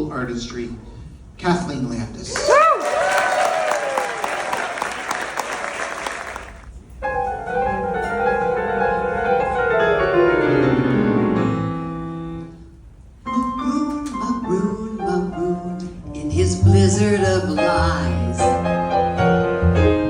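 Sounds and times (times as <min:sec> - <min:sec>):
applause: 0:02.3 - 0:06.7
solo piano: 0:07.0 - 0:12.6, 0:16.5 - 0:20.0.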